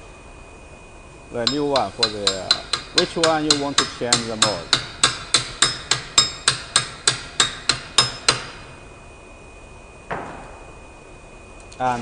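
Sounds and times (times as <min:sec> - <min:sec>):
hammer blows on metal: 0:01.4 - 0:08.7.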